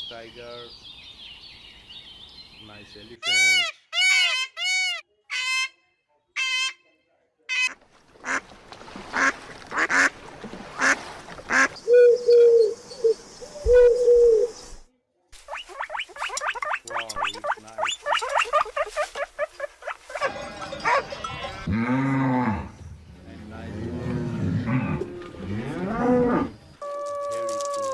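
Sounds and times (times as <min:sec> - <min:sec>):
ducks quacking: 0:07.5 - 0:08.5, 0:09.1 - 0:10.1, 0:10.8 - 0:11.8, 0:15.5 - 0:21.7.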